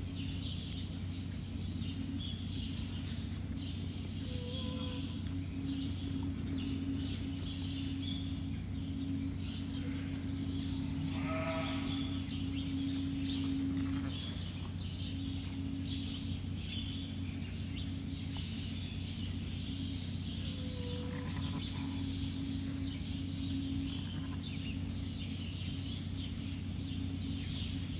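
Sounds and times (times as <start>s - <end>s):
steady low hum: 0.0s - 27.9s
sheep bleating: 9.9s - 12.4s, 13.0s - 14.6s, 20.6s - 22.1s, 23.8s - 24.6s.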